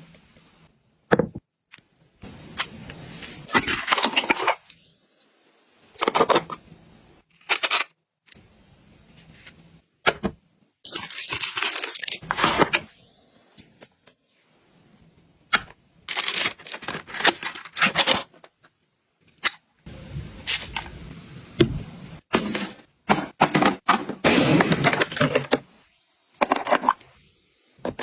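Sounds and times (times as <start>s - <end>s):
packaging tearing and crackling: 10.9s - 12.4s, 16.1s - 18.3s.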